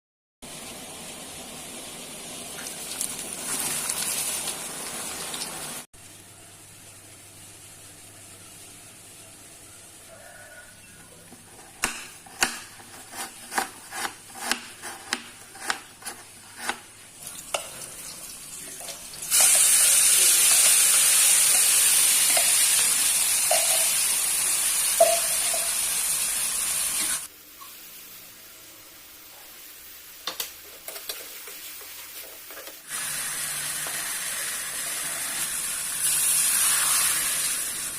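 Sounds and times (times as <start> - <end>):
food sizzling in hot oil: 0.4 - 5.9, 17.1 - 28.2, 29.9 - 37.9.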